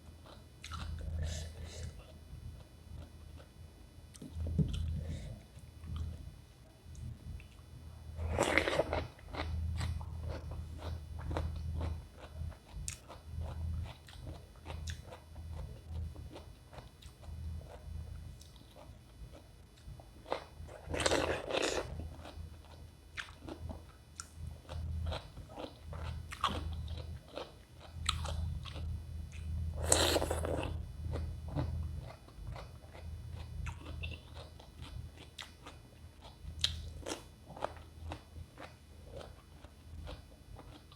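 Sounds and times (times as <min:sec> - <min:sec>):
low hum: 0:00.0 - 0:14.3.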